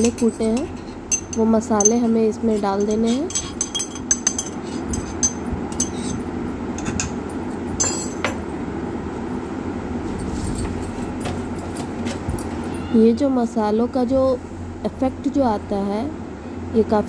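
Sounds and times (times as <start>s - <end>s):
steady low hum: 0.0s - 17.0s
spoon clinking and scraping a pan: 2.8s - 6.2s.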